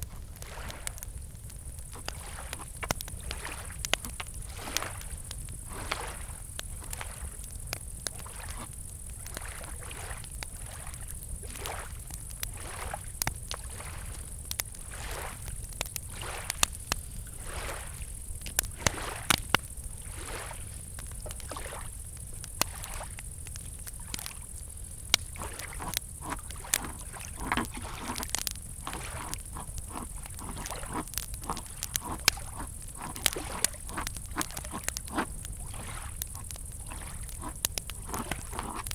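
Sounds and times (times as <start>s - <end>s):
campfire crackling: 0.0s - 38.9s
crickets chirping: 0.0s - 38.9s
small waves lapping: 0.1s - 38.9s.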